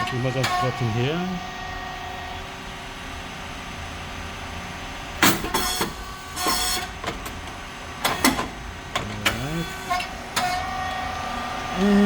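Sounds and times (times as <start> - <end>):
machine humming: 8.6 - 12.0.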